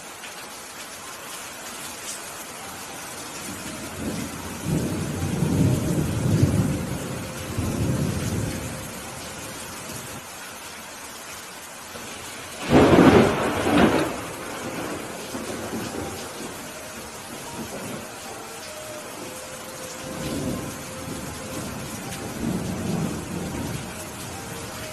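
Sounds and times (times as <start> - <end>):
steady rain: 0.0 - 24.9
thunder rumble: 3.8 - 9.2, 12.6 - 18.2, 20.0 - 24.9
sharp thunderclap: 12.6 - 16.1.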